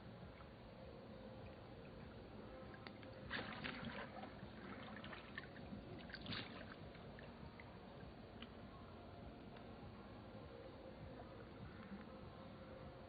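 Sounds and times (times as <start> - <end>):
water splashing and lapping: 1.8 - 8.6.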